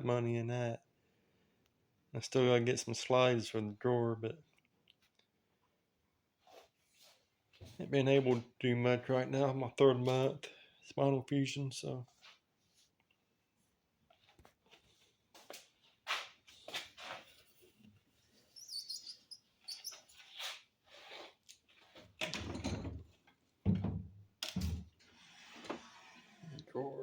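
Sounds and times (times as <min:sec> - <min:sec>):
short high squeak: 0:18.5 - 0:20.6
wooden drawer scraping: 0:25.0 - 0:26.6.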